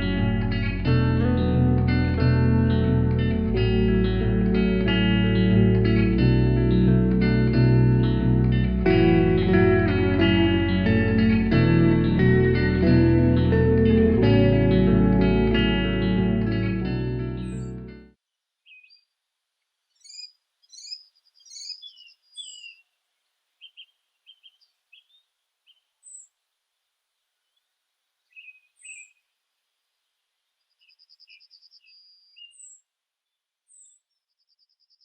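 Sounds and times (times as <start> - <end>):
background music: 0.0 - 18.1
songbirds chirping: 0.0 - 35.0.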